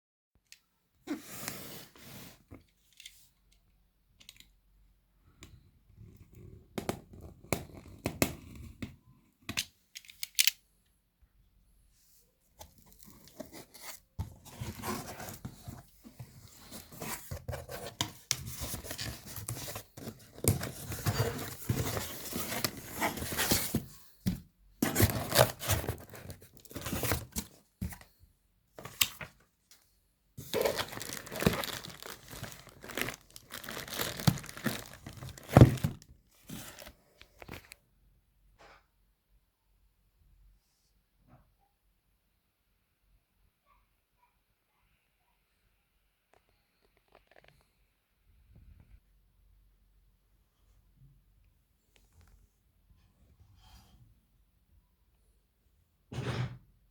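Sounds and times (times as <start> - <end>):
packaging torn and crumpled: 30.5 - 36.0.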